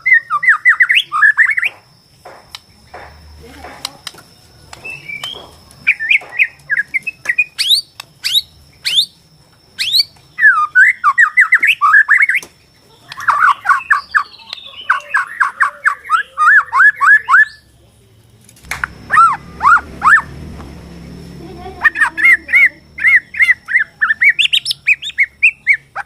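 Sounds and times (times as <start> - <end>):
bird singing whistled runs: 0.0 - 1.8, 4.3 - 9.2, 9.8 - 17.7, 19.0 - 20.3, 21.8 - 26.0.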